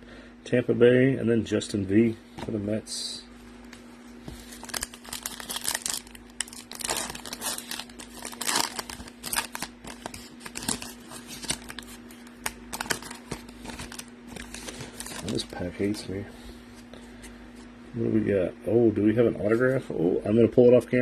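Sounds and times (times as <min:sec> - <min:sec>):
foil wrapper crinkling and tearing: 0:04.4 - 0:16.0.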